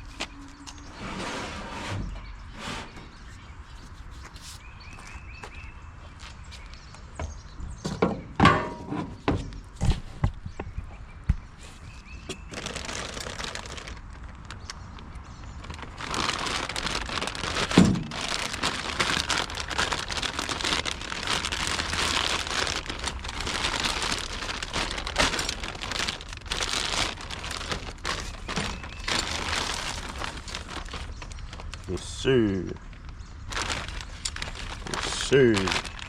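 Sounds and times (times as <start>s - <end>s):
packaging crinkling and rustling: 12.3s - 31.9s, 32.7s - 36.0s.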